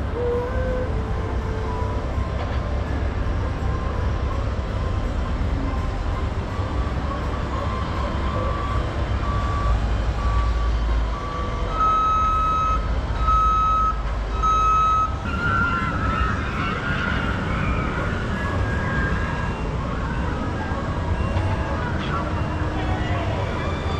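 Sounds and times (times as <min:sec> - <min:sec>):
steady low rumble: 0:00.0 - 0:23.9
electronic warning beeps: 0:07.0 - 0:16.1.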